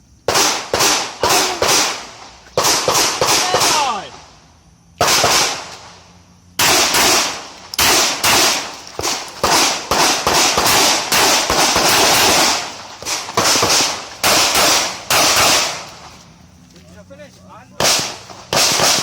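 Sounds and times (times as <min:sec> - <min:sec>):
pistol shots: 0:00.3 - 0:04.3, 0:05.0 - 0:06.0, 0:06.6 - 0:16.2, 0:17.8 - 0:19.0.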